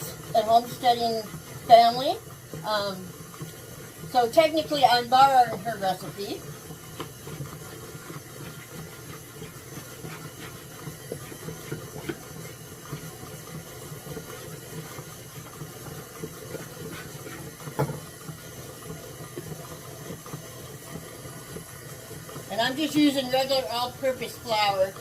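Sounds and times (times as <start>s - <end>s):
measuring cup scooping flour: 0.0s - 25.0s.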